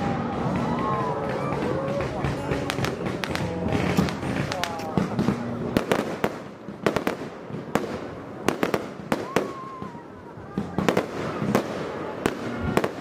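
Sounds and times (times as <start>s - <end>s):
fireworks bangs: 0.0s - 13.0s
faint firework whistle: 9.1s - 10.1s.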